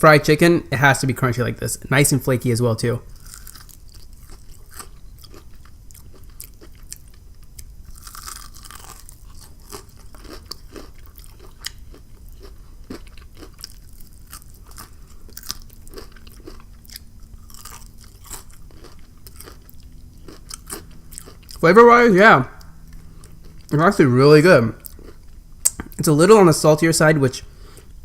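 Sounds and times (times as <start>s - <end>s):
crunchy chewing: 3.1s - 21.6s, 22.6s - 23.8s, 24.8s - 26.0s.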